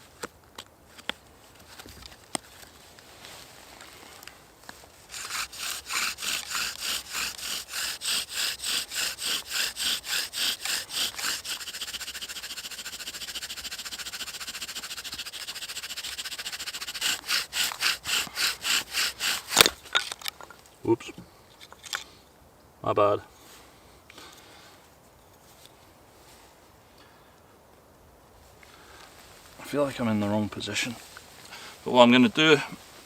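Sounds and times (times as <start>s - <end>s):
bow drill rasping: 5.1s - 20.1s.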